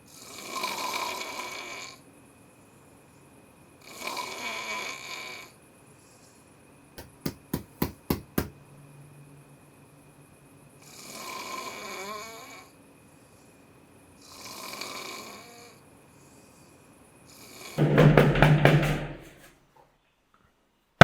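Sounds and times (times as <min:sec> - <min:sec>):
man snoring: 0:00.1 - 0:02.0, 0:03.8 - 0:05.6, 0:10.8 - 0:12.8, 0:14.2 - 0:15.8, 0:17.3 - 0:17.8
knocks on a door: 0:07.0 - 0:08.5, 0:17.8 - 0:19.5.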